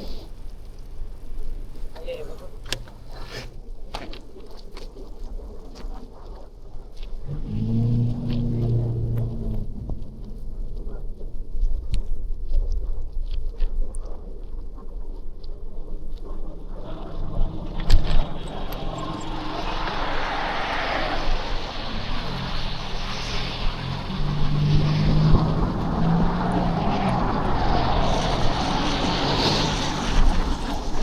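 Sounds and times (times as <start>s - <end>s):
traffic engine drone: 7.0s - 12.5s, 16.0s - 31.0s
low hum: 7.1s - 31.0s.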